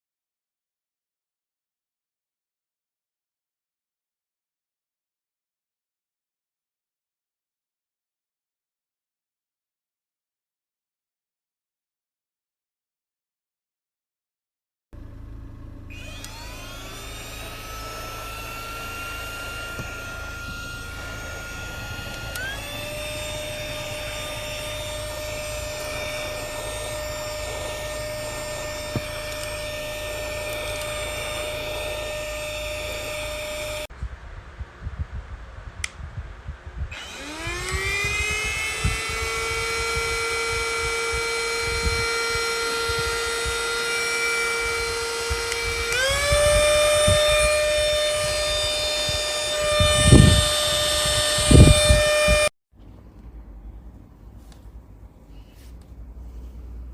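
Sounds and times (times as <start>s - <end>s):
handheld vacuum cleaner whine: 15.8s - 34.0s, 36.8s - 52.5s.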